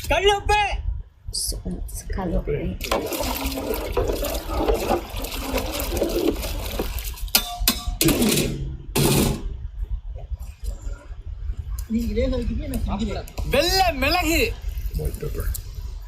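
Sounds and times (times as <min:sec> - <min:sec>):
water splashing: 0:02.8 - 0:07.5
water pouring and sloshing: 0:02.8 - 0:08.4.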